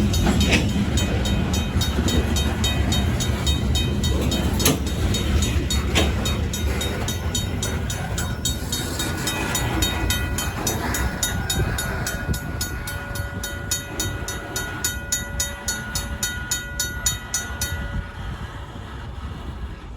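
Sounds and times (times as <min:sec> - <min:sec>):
mechanical crossing bell ringing: 0:00.0 - 0:18.2
freight train rumbling: 0:00.0 - 0:19.9.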